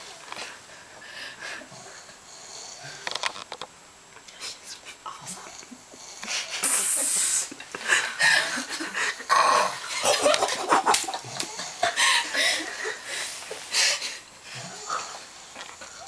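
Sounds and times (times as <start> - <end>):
people stifling laughter: 6.3 - 13.6.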